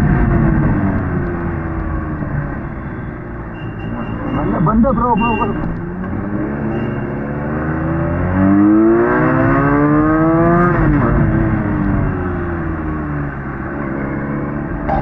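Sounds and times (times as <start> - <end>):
motorcycle engine accelerating: 5.8 - 11.9, 12.7 - 15.0.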